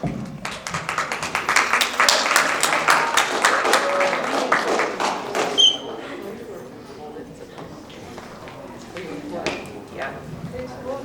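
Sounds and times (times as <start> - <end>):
crowd applauding: 0.4 - 6.0.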